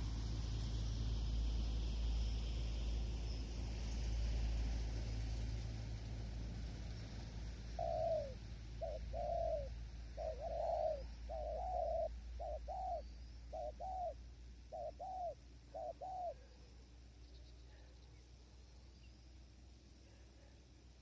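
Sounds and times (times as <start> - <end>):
dove cooing: 7.7 - 16.7.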